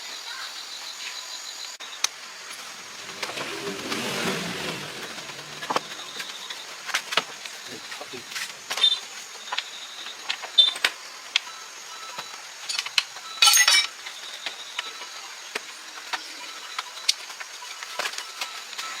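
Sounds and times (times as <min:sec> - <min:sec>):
loud rattle: 0:02.5 - 0:08.9
tools clinking and tapping: 0:12.7 - 0:14.0.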